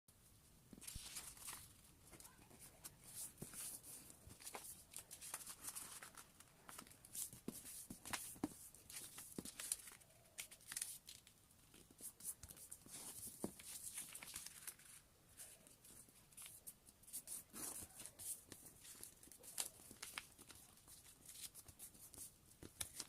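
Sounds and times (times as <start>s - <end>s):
paper rustling and crinkling: 0.7s - 23.0s.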